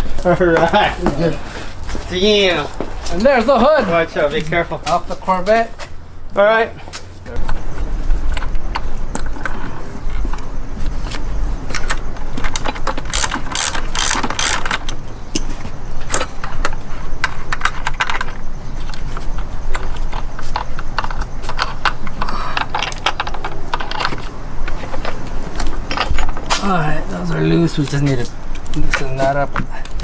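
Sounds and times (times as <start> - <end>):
ratchet wrench clicking: 12.6 - 15.0.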